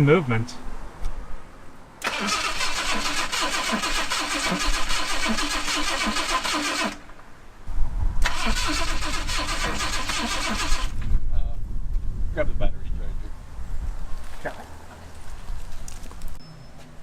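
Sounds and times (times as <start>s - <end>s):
engine cranking without starting: 2.0s - 7.2s, 8.2s - 11.0s.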